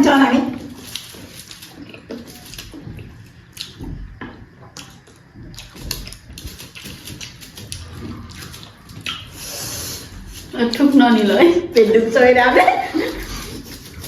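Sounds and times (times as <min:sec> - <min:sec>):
people chewing with wet smacks: 0:00.6 - 0:11.5, 0:12.8 - 0:14.0
soft low thuds: 0:02.8 - 0:04.6.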